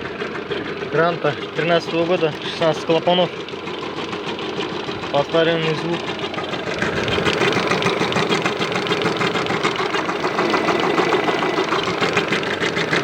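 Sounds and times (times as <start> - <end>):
car engine idling: 0.0 - 13.0
fast ticking knock: 3.3 - 13.0.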